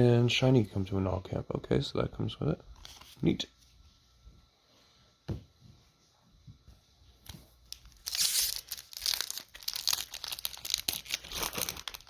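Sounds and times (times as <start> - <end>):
foil wrapper crinkling: 7.7 - 12.0.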